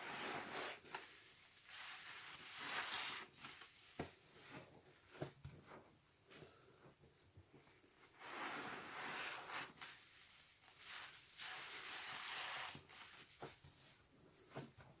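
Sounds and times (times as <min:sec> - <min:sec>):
sponge squelching suds: 0:00.0 - 0:05.2, 0:08.1 - 0:14.6.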